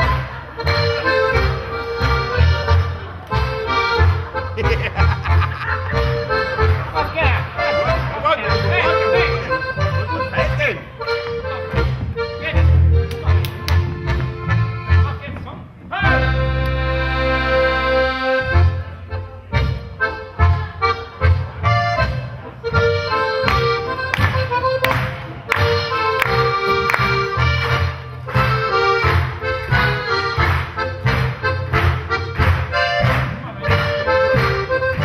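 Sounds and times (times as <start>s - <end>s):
folk band playing lively tune: 0.0s - 35.0s
bouncing bass beat: 3.4s - 15.1s.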